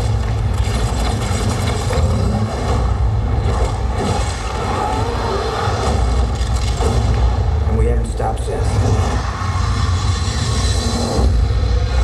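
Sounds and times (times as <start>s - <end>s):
low rumble of sound effects: 0.0s - 12.0s
film dialogue over loudspeakers: 5.6s - 11.6s.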